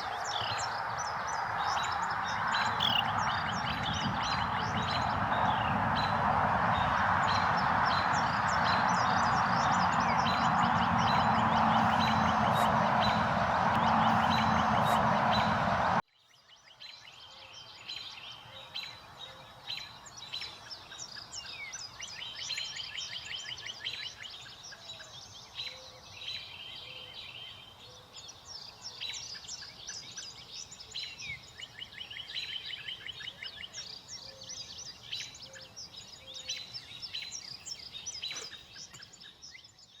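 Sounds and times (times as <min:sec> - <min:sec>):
loud steady rushing noise: 0:00.0 - 0:16.0
small birds chirping and twittering: 0:00.0 - 0:40.0.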